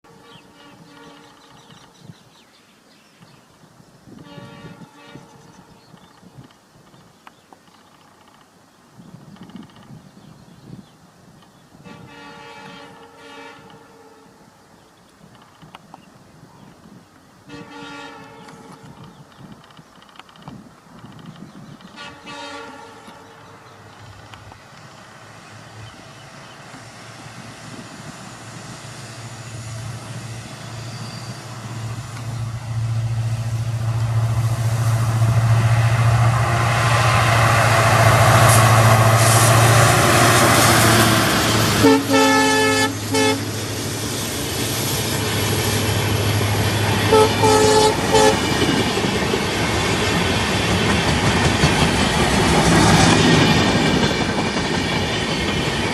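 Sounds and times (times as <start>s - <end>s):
locomotive horn blasts: 4.2s - 5.6s, 11.8s - 14.4s, 17.5s - 18.9s, 22.0s - 23.4s, 41.8s - 43.5s, 47.1s - 48.5s
diesel locomotive engine drone: 21.8s - 55.9s.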